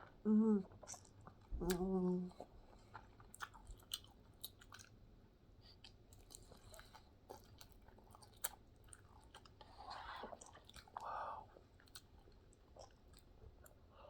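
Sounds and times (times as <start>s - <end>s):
chewing noodles: 0.6s - 5.0s, 5.6s - 13.9s.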